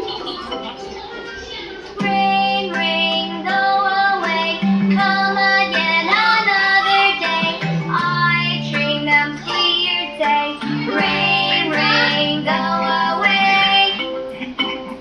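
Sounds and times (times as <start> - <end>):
child-like voice singing: 0.0 - 14.0
backing music: 0.0 - 15.0.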